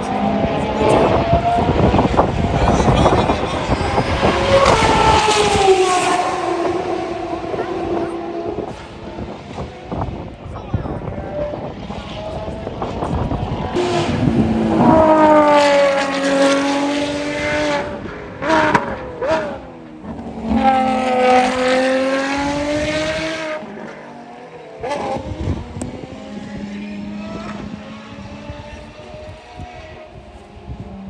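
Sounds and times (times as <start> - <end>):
race car engine passing: 0.0 - 10.4, 11.0 - 31.0
steady engine note: 13.2 - 18.1.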